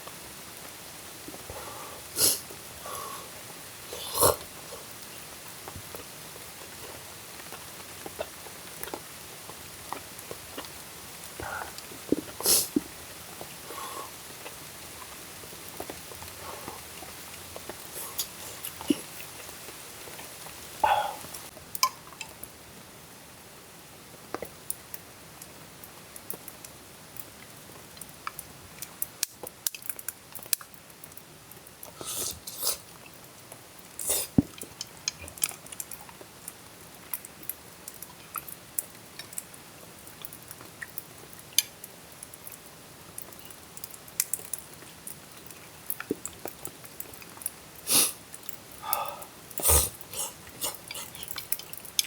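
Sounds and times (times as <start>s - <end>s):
person chewing and biting: 49.0s - 51.8s.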